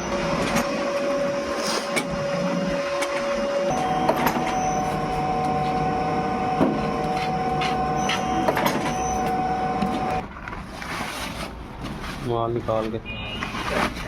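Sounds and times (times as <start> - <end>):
factory machinery whining: 0.0 - 10.2.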